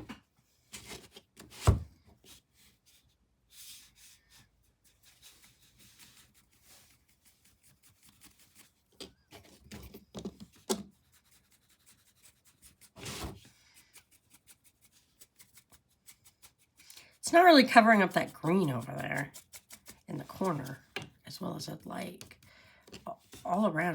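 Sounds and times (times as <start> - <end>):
paintbrush rubbing on canvas: 10.9 - 21.0.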